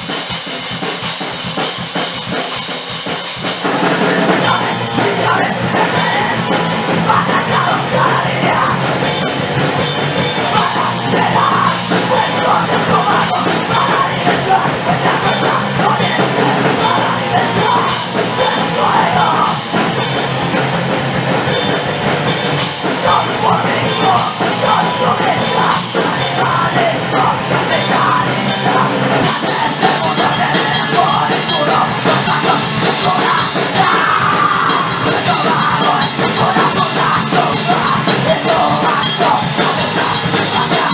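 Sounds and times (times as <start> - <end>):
distorted guitars: 0.0 - 40.9
pounding drums: 0.0 - 40.9
shouted vocals: 4.4 - 9.4, 10.3 - 19.9, 22.9 - 40.9.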